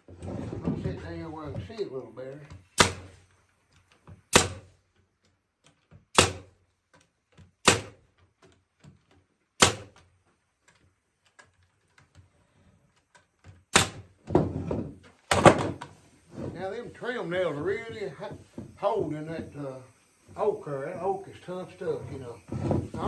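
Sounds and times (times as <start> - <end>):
nail gun shots into wood: 2.7 - 3.2, 4.3 - 4.8, 6.1 - 6.6, 7.6 - 8.1, 9.6 - 10.1, 13.7 - 14.2, 15.3 - 15.8.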